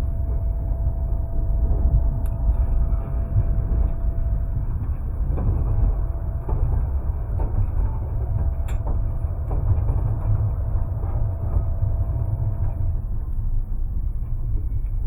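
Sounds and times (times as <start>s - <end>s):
train rumbling on rails: 0.0s - 15.0s.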